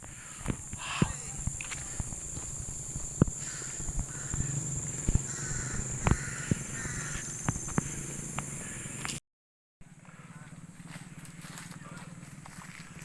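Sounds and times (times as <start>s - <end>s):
harsh raspy animal calls: 0.0s - 9.0s.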